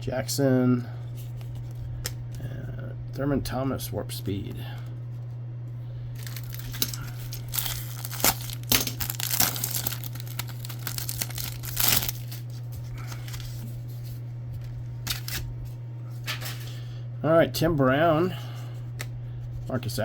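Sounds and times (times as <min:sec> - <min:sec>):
steady low hum: 0:00.0 - 0:20.0
wrapper tearing and crinkling: 0:06.2 - 0:13.9, 0:14.6 - 0:15.5.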